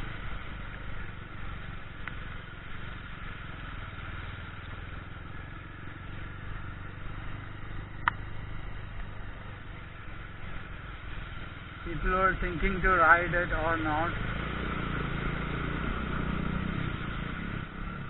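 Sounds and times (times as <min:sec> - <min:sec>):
motorcycle engine idling: 0:00.0 - 0:16.5.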